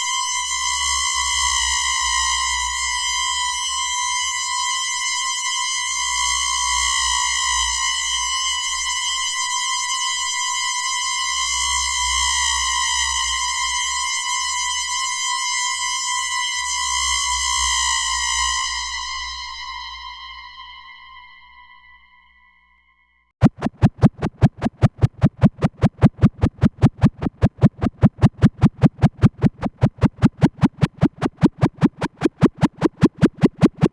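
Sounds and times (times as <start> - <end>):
buzzy electronic tone: 23.4 - 33.9
fluttering low rumble: 23.4 - 33.9.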